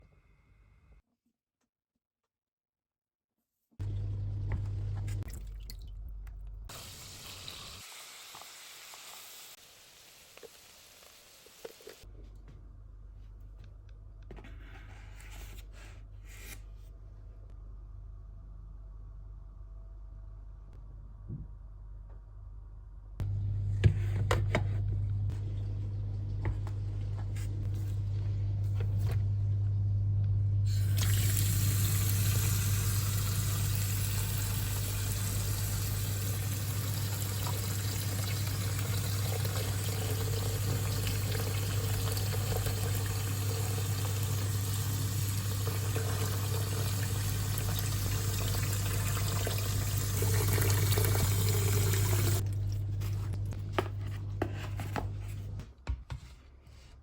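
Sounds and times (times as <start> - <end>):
water running from a tap: 6.7 - 12.0, 30.7 - 52.4
steady low hum: 16.9 - 31.0.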